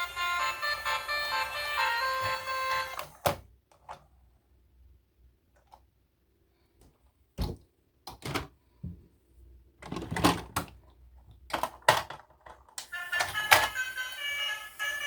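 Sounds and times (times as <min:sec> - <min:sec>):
electronic toy tune: 0:00.0 - 0:03.2, 0:12.9 - 0:15.0
plastic toys and packaging handled: 0:09.7 - 0:15.0.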